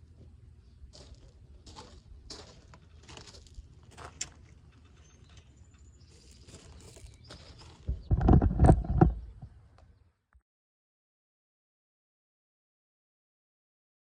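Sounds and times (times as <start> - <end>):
soil scraping and rustling: 6.0 - 9.4.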